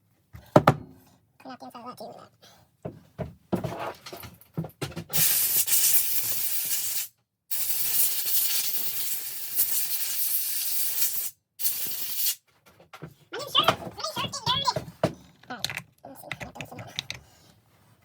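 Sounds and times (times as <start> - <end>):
compressed air hissing: 5.2 - 12.4.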